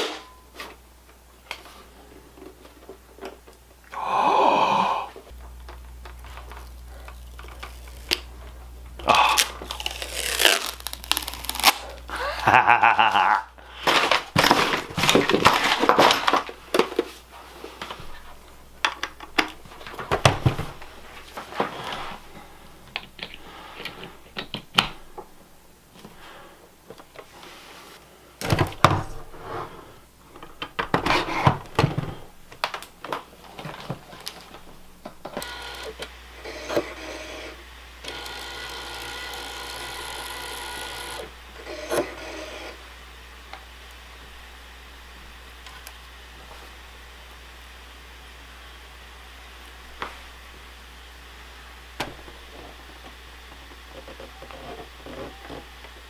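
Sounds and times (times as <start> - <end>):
packaging rustling and tearing: 5.6 - 12.1, 13.7 - 17.2.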